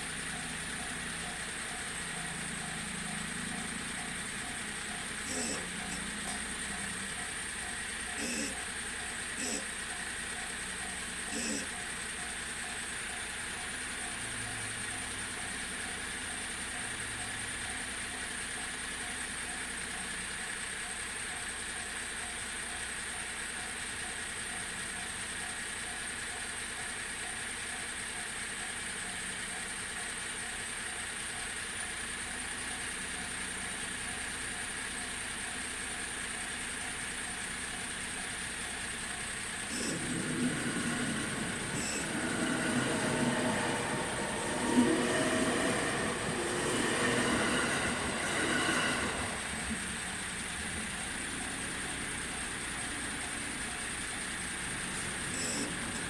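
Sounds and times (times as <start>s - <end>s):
train rumble: 0.0s - 11.8s, 37.2s - 56.0s
level-crossing alarm: 0.0s - 56.0s.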